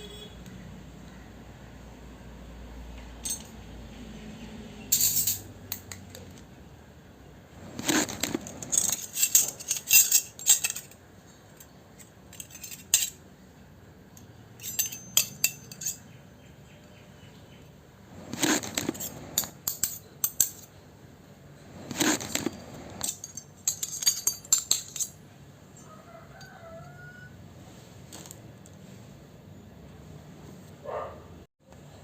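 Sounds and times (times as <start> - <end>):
toy kitchenware clinking: 7.7 - 11.0, 14.5 - 16.1, 21.8 - 25.2.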